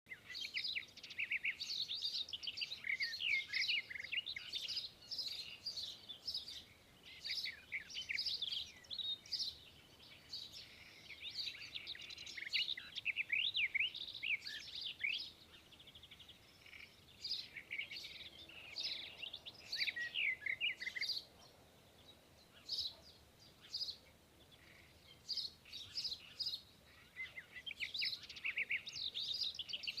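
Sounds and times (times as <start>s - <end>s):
small birds chirping: 0.1s - 30.0s.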